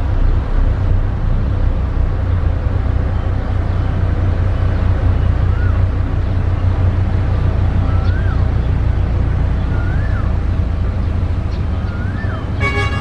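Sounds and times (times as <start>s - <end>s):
diesel machine engine rumbling: 0.0s - 13.0s
faint rising and falling whistle: 9.6s - 10.4s.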